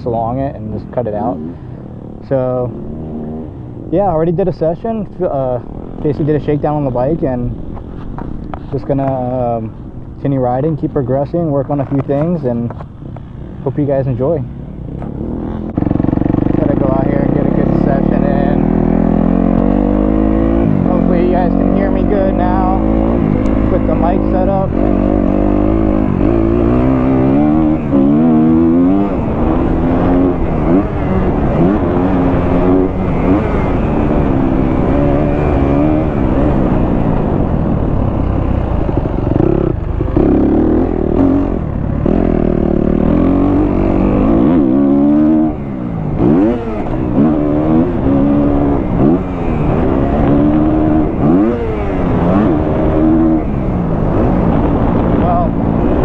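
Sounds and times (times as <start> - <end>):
motorcycle engine revving: 0.0 - 56.0.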